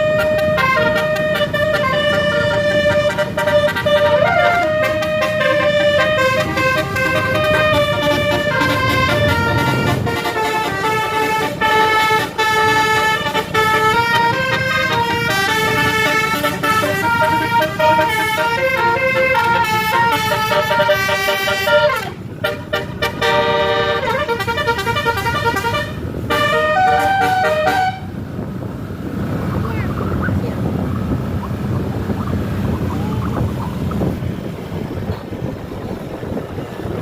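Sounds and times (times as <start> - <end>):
musical bus horn melody: 0.0 - 28.2
low rumble: 28.0 - 37.0.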